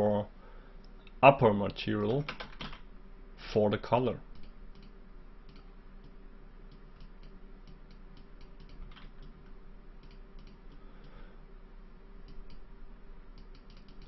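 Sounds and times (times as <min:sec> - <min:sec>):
low electrical hum: 0:00.0 - 0:14.0
keyboard and mouse clicks: 0:05.5 - 0:09.4, 0:10.0 - 0:11.2, 0:13.4 - 0:14.0.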